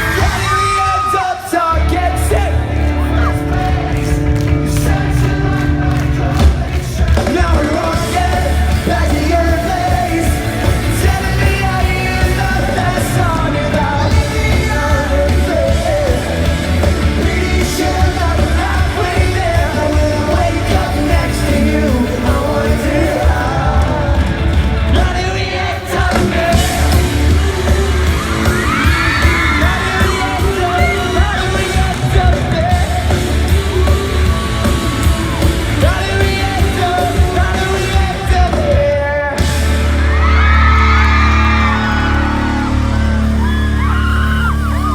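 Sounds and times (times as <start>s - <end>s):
crowd yelling and screaming: 0.0s - 44.9s
lead vocals: 0.0s - 44.9s
pop-punk band playing live: 0.0s - 44.9s.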